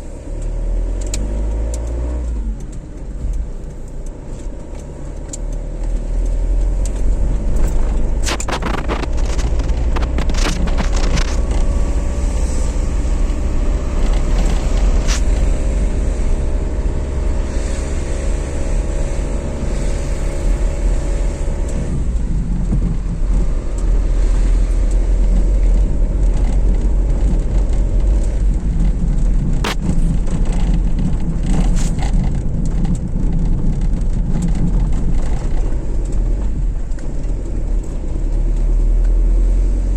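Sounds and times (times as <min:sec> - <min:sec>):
car road and engine rumble: 0:00.0 - 0:39.9
sharp clicks or knocks: 0:04.8 - 0:12.0, 0:29.6 - 0:33.0.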